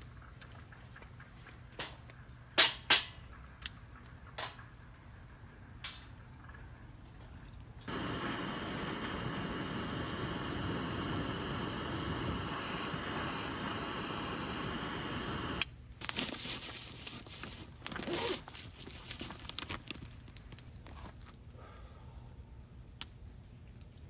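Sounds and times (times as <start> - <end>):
steady noisy hiss: 7.8 - 24.0
crinkling and rustling: 16.0 - 21.5.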